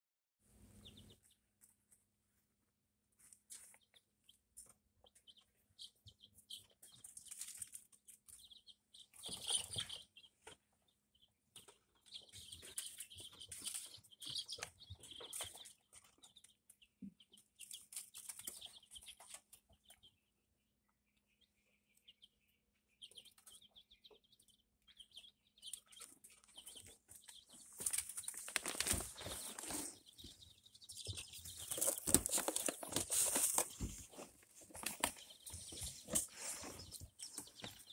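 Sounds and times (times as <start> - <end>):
chicks peeping: 0.5 - 37.9
scratchy rustling: 26.0 - 37.9.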